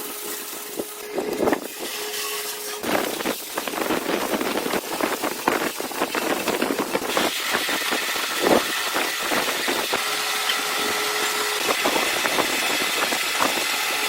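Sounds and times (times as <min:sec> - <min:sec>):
hiss: 0:01.6 - 0:10.0.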